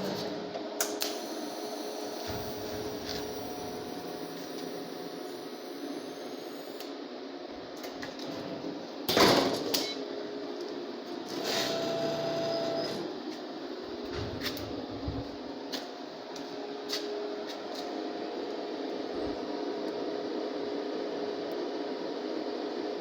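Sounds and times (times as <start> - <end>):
welding rig hissing: 1.0 - 6.9.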